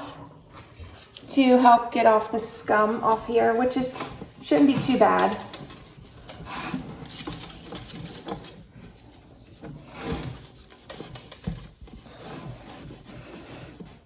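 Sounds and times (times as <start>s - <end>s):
cloth rubbing on glass: 6.5s - 14.0s.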